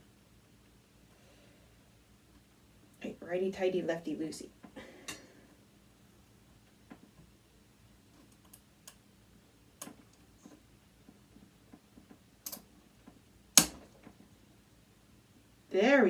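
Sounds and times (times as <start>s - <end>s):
loud sharp screw click: 13.6s - 13.8s.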